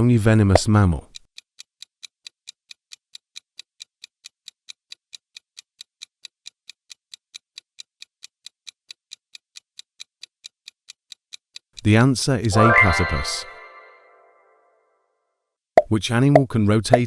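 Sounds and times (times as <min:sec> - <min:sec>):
countdown timer ticking: 0:12.4 - 0:14.5.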